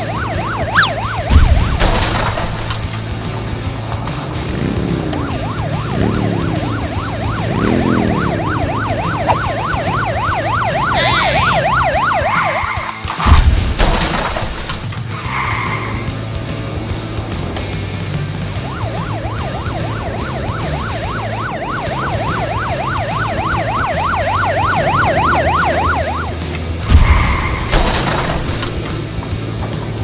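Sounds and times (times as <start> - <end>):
police siren yelp: 0.0 - 2.9, 4.6 - 13.0, 18.3 - 28.8
background music: 0.0 - 30.0.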